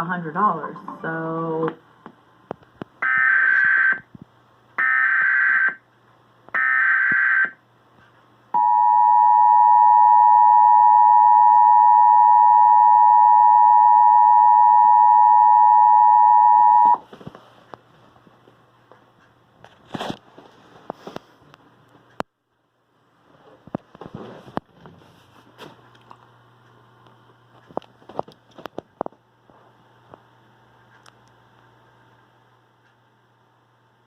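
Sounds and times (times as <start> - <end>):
steady two-tone attention signal: 8.6 - 17.0.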